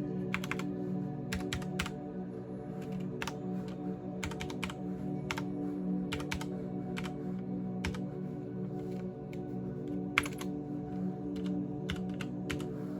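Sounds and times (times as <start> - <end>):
quiet background music: 0.0 - 12.9
mechanical keyboard typing: 0.3 - 0.6, 1.3 - 1.9, 4.2 - 5.4, 6.1 - 7.1, 10.2 - 10.5, 11.4 - 12.7.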